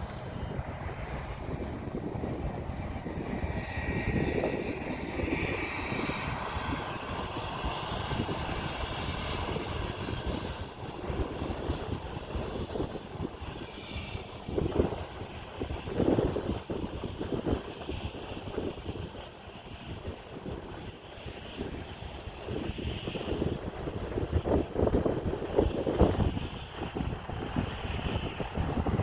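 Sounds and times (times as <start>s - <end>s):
deep engine drone: 0.0s - 10.0s
faint mechanical whine: 0.0s - 16.5s
wind buffeting microphone: 0.0s - 29.0s.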